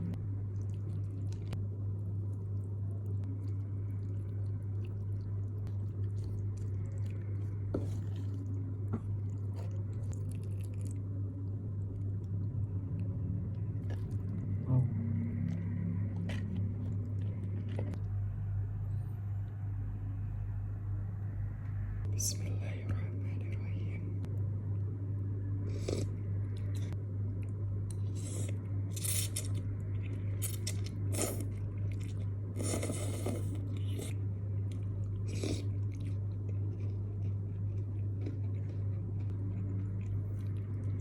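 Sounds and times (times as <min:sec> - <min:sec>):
steady low hum: 0:00.0 - 0:41.0
chewing and wet mouth sounds: 0:00.1 - 0:18.1, 0:25.7 - 0:41.0.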